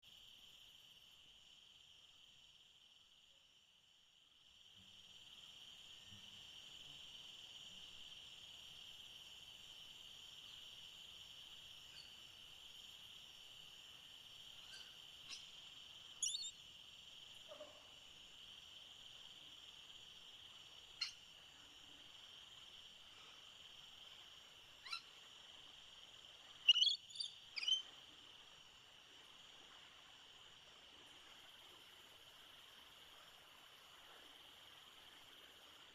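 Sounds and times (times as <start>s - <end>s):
high-pitched insect drone: 0.1s - 29.5s
bird chirps: 11.9s - 12.2s, 14.6s - 15.5s, 16.2s - 16.6s, 24.8s - 25.1s, 26.6s - 27.9s.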